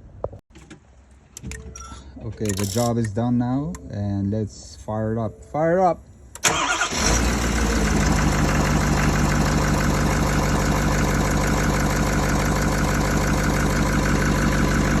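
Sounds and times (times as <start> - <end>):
diesel engine idling: 6.5 - 15.0.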